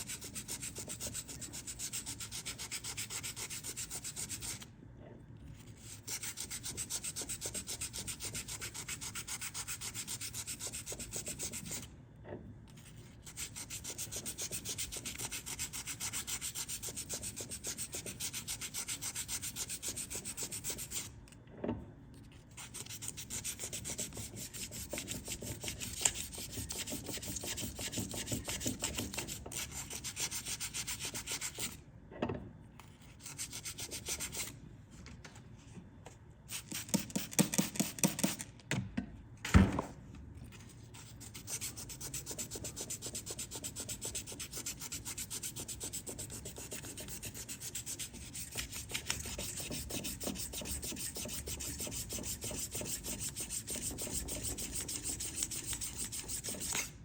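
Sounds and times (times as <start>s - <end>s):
sandpaper rubbing: 41.0s - 56.9s.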